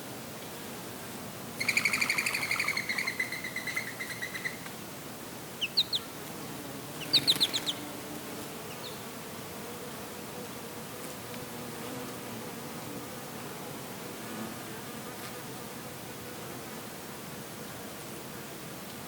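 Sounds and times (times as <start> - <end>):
outdoor background hiss: 0.0 - 19.0
songbird trilling and chirping: 1.6 - 4.6, 5.6 - 6.1, 7.0 - 7.8, 8.7 - 9.0.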